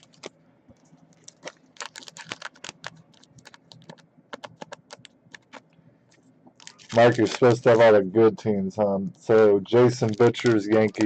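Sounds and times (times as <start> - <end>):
typing on keyboard: 1.8 - 5.6.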